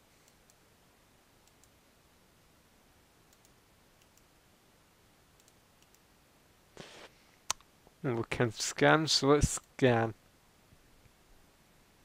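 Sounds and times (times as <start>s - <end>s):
computer mouse clicks: 1.4s - 1.8s, 3.3s - 4.3s, 5.4s - 6.1s.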